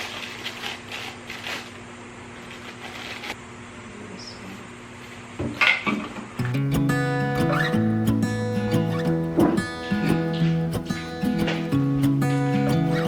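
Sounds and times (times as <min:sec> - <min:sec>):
background guitar music: 0:06.4 - 0:13.0.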